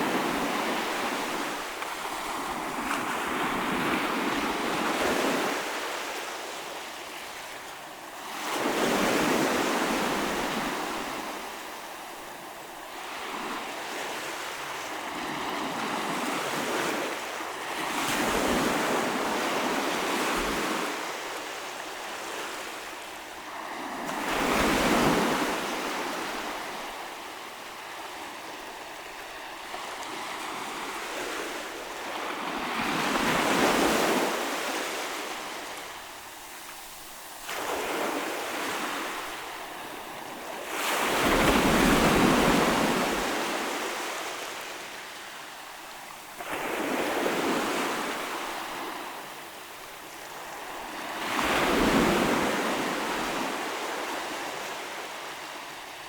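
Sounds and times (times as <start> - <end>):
ocean waves breaking on shore: 0.0 - 56.0.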